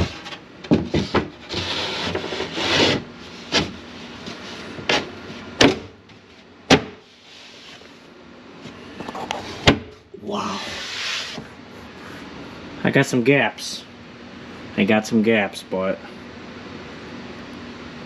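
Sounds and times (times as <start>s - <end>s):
wood scraping: 0.0s - 5.5s.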